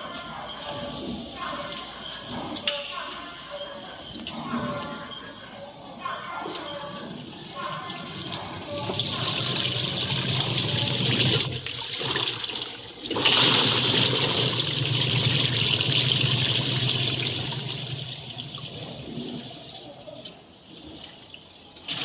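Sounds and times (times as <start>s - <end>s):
water churning in washing machine: 7.2s - 22.0s.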